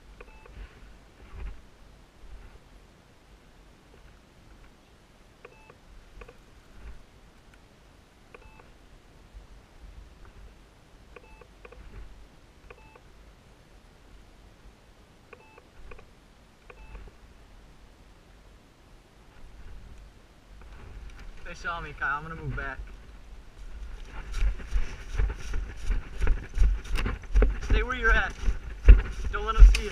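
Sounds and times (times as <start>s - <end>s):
faint short beeps: 0.2s - 0.6s, 5.4s - 6.4s, 8.4s - 8.7s, 11.2s - 11.8s, 12.7s - 13.0s, 15.4s - 16.0s, 16.7s - 17.0s
low rumble: 20.7s - 29.9s.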